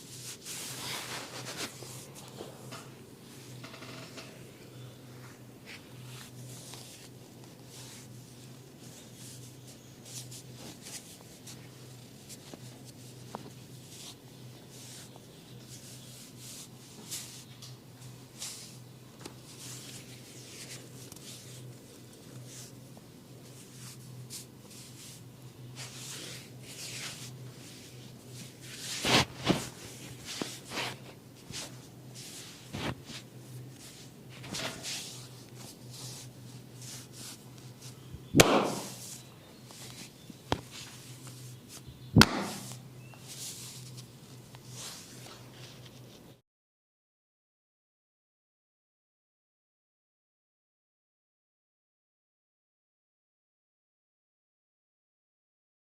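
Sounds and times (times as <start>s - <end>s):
hands rubbing over skin: 0.1s - 2.4s, 25.8s - 46.1s
loud sharp hits: 38.4s - 39.0s.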